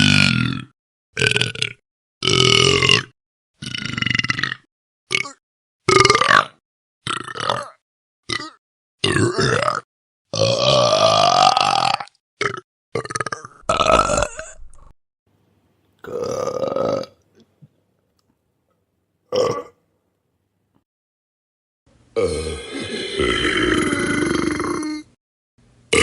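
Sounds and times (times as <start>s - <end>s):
person burping: 0.0s - 15.0s, 16.0s - 17.2s, 19.3s - 19.8s, 22.2s - 25.2s.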